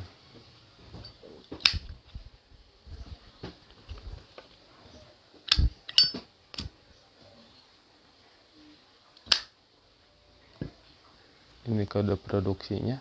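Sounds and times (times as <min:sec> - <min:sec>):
faint handling noise: 0:00.0 - 0:09.4
lighter lid clicking: 0:01.6 - 0:01.9, 0:05.5 - 0:06.7, 0:09.3 - 0:09.5.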